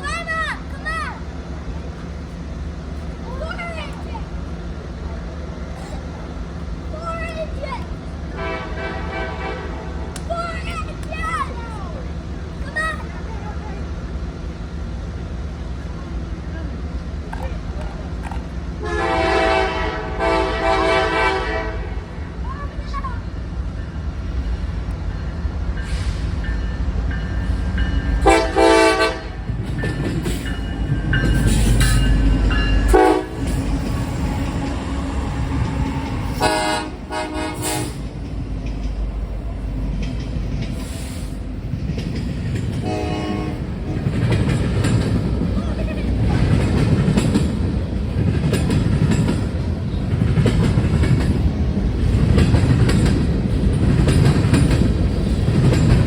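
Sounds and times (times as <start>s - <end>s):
train rumbling past: 0.0s - 56.0s
locomotive horn blasts: 8.3s - 10.2s, 18.8s - 22.1s, 28.2s - 29.5s, 32.8s - 33.5s, 36.3s - 38.0s, 42.8s - 44.2s.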